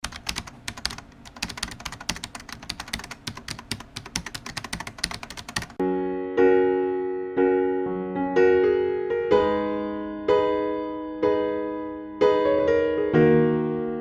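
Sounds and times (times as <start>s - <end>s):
typing on keyboard: 0.0s - 5.8s
electric piano chords: 0.0s - 14.0s.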